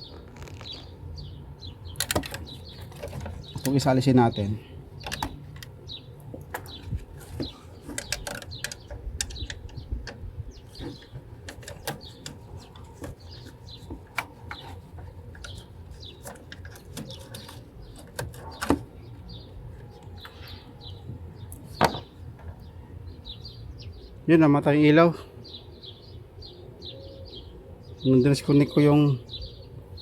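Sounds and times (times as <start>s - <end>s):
birds chirping: 0.0s - 30.0s.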